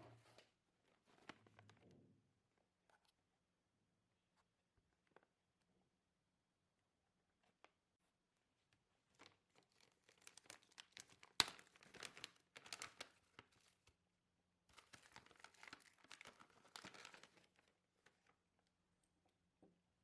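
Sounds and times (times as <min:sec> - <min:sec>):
packaging crinkling and tearing: 0:09.1 - 0:13.8, 0:14.7 - 0:18.3.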